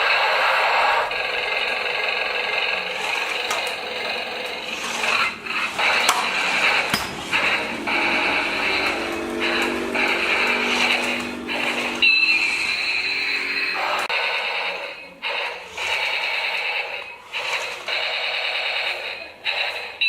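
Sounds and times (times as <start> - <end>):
toy tank motors whirring: 0.0 - 20.0.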